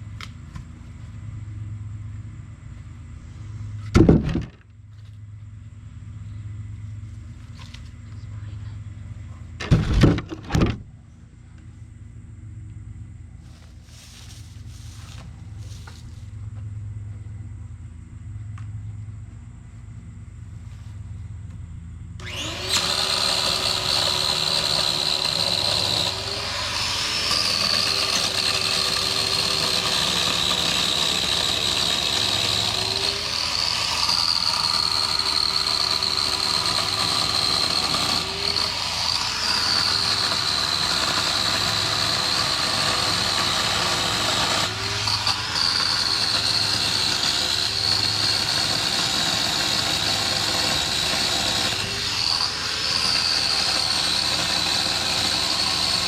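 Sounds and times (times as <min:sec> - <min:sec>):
chainsaw running: 0:22.2 - 0:56.0.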